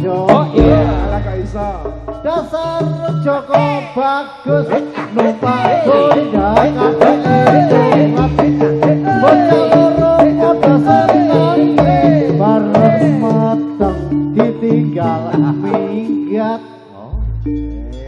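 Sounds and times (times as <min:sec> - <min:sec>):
deep drum beats: 0:00.0 - 0:03.9, 0:05.4 - 0:15.7
gamelan music: 0:00.3 - 0:04.0, 0:06.2 - 0:16.6, 0:17.2 - 0:18.0
metallophone notes: 0:00.3 - 0:04.0, 0:05.9 - 0:18.0
hand drum strokes: 0:00.4 - 0:03.1.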